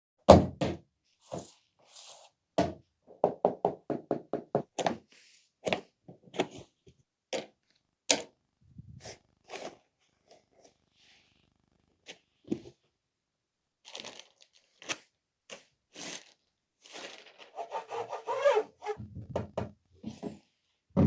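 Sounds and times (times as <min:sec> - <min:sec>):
cardboard knocks and thuds: 0:00.3 - 0:00.8.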